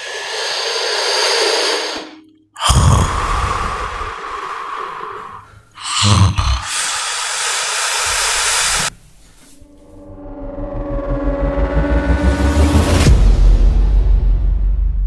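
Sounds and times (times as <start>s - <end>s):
loud snoring: 0.0s - 8.9s.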